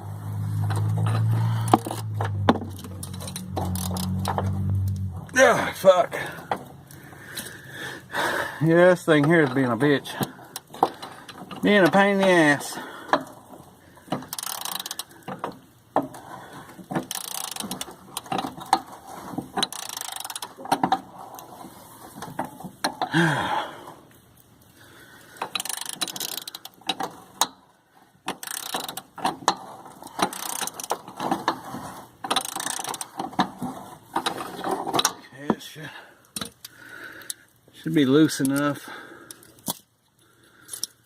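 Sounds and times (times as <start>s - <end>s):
socket ratchet clicking: 14.3s - 15.1s, 25.6s - 26.7s, 28.3s - 29.1s, 30.2s - 31.0s.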